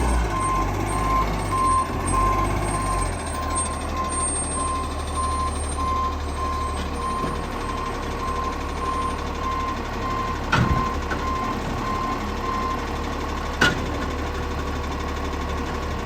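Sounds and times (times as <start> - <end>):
reversing alarm beeping: 0.0 - 12.8
diesel engine: 0.0 - 16.0.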